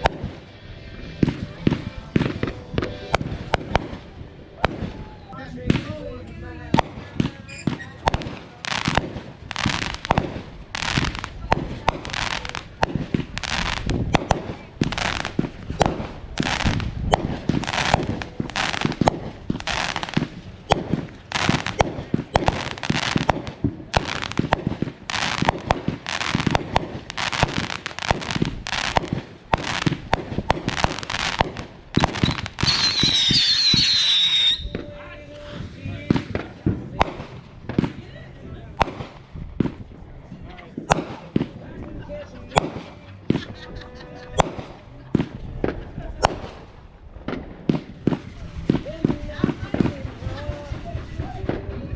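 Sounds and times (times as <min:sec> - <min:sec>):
fireworks bangs: 0:00.0 - 0:51.9
whistling firework: 0:06.7 - 0:35.0.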